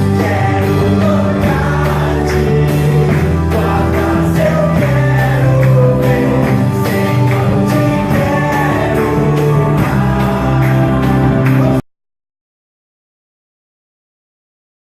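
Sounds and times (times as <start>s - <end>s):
worship song with singing: 0.0s - 11.8s.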